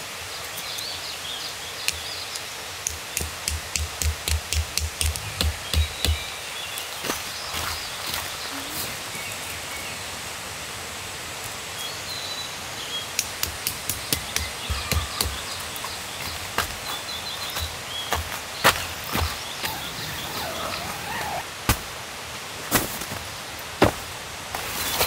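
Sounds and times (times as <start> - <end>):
small birds chirping: 0.0 - 10.2, 11.4 - 21.4
steady outdoor hiss: 0.0 - 25.0
sharp knocks and clicks: 2.8 - 6.3.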